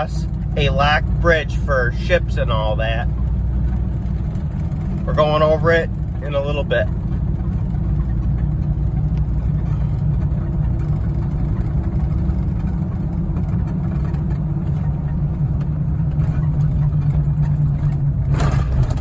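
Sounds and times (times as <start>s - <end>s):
road noise: 0.0s - 19.0s
vehicle engine droning: 0.0s - 19.0s.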